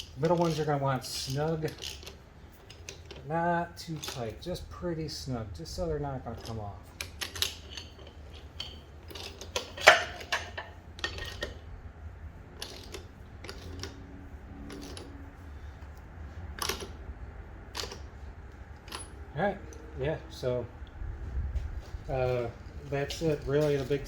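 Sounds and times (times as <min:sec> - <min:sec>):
wrench clinking on metal bolts: 0:00.0 - 0:04.6, 0:06.3 - 0:11.6, 0:18.8 - 0:19.8.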